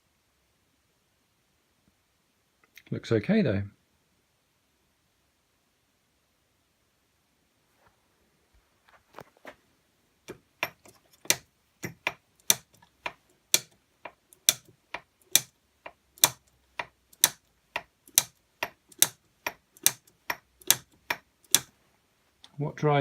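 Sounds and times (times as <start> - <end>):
metallic ratchet clicking: 10.6 - 15.5, 16.2 - 21.7.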